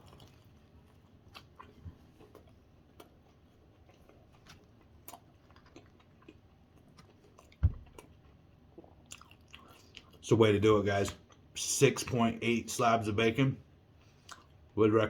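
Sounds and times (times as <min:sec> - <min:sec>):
person chewing: 0:00.0 - 0:10.2, 0:14.0 - 0:14.7.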